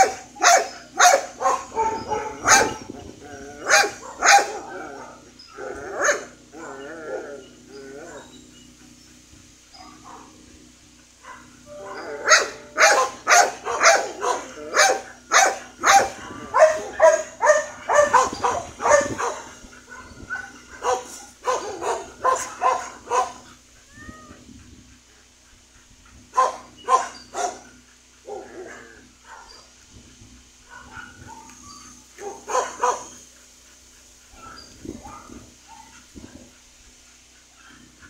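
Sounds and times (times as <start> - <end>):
dog barking: 0.0 - 2.9, 3.6 - 4.7, 6.0 - 6.3, 9.8 - 10.3, 11.2 - 23.4, 26.4 - 27.6, 29.2 - 29.6, 30.7 - 31.5, 32.2 - 33.2, 34.4 - 36.0.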